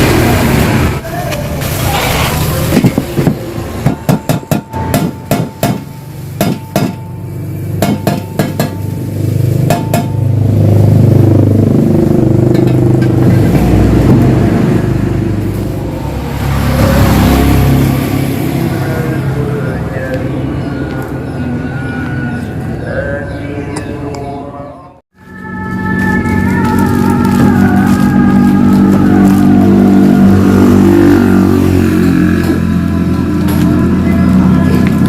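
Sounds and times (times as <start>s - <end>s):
hammer striking metal: 2.8s - 10.4s.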